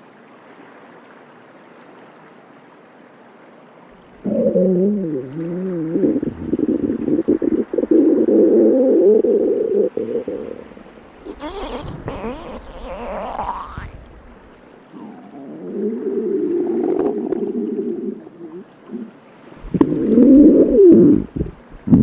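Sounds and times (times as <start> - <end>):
cartoon stomach growl: 4.2 - 14.3, 15.0 - 22.0.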